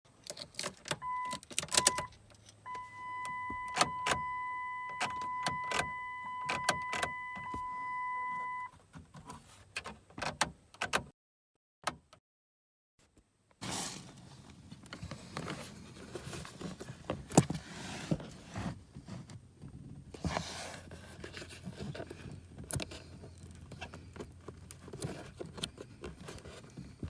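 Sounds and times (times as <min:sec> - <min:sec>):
electronic beep: 0:02.7 - 0:08.7.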